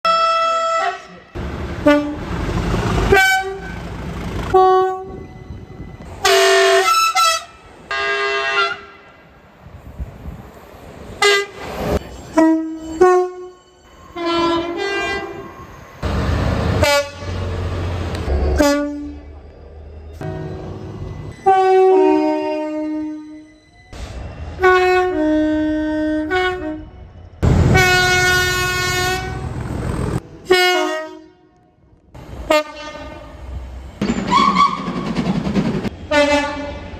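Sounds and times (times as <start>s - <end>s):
train horn blasts: 0.1s - 2.3s, 3.1s - 3.9s, 4.5s - 5.3s, 6.2s - 9.2s, 12.3s - 13.6s, 14.2s - 15.5s, 16.8s - 17.5s, 18.3s - 19.3s, 20.2s - 23.3s, 24.6s - 27.0s, 27.7s - 29.6s, 30.4s - 31.8s, 32.5s - 33.4s, 36.0s - 36.9s
passing train rumble: 1.2s - 36.9s.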